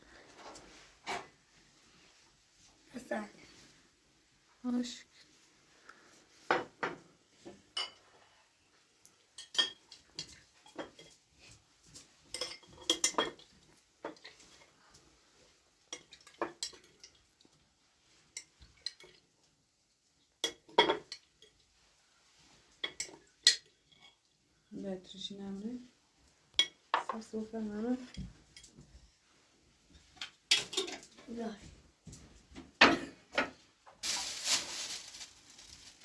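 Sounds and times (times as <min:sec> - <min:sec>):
dishes and cutlery clinking: 0:07.7 - 0:08.1, 0:09.4 - 0:14.7, 0:15.9 - 0:17.2, 0:20.4 - 0:21.6, 0:22.8 - 0:24.2, 0:26.5 - 0:27.3, 0:30.0 - 0:31.2, 0:32.8 - 0:34.2.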